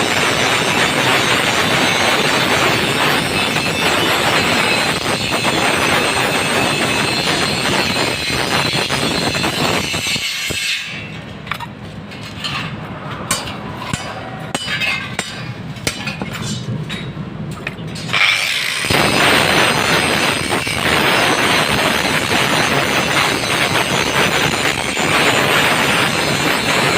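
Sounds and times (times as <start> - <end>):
power tool grinding steel: 0.0 - 11.0, 18.0 - 26.9.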